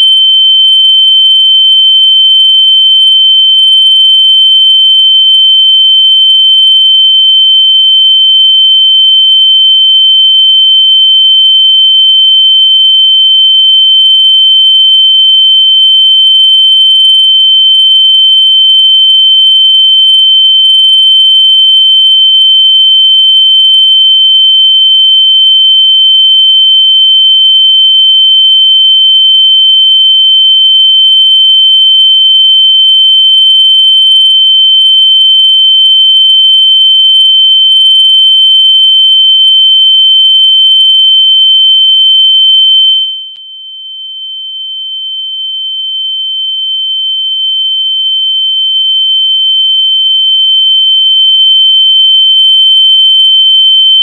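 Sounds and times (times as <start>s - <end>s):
high-pitched electronic sine tone: 38.8s - 45.4s.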